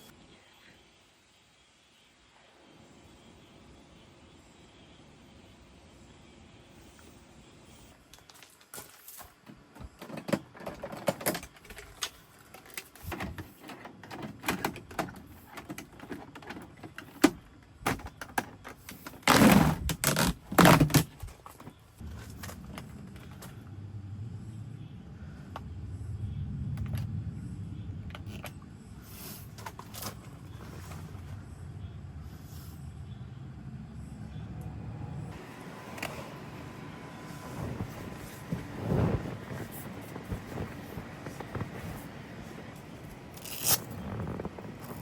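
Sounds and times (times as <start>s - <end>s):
steady low hum: 19.7s - 45.0s.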